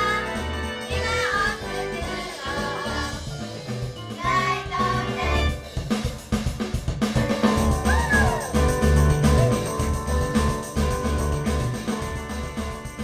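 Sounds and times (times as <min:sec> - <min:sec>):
band music: 0:00.0 - 0:13.0
quick drum hits: 0:02.9 - 0:13.0.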